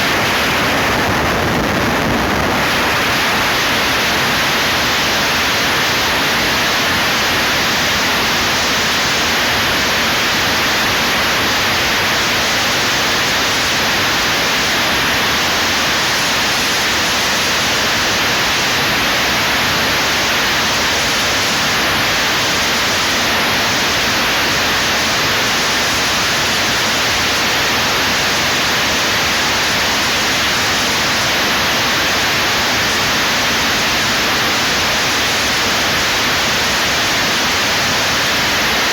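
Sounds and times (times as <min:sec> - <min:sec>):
static-like hiss: 0:00.0 - 0:38.9.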